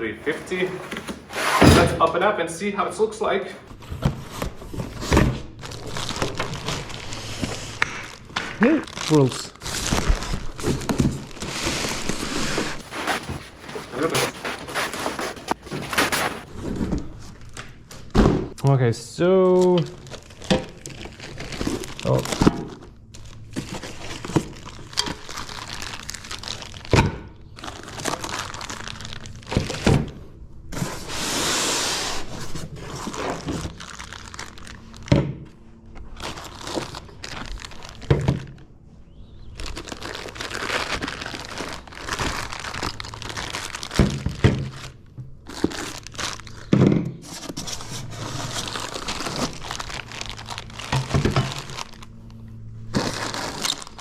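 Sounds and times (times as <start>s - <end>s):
packing material crinkling and tearing: 0.0s - 2.3s, 3.4s - 16.6s, 19.9s - 30.1s, 30.8s - 35.1s, 35.8s - 38.6s, 39.2s - 54.0s
thunks of parts set down: 0.0s - 2.4s.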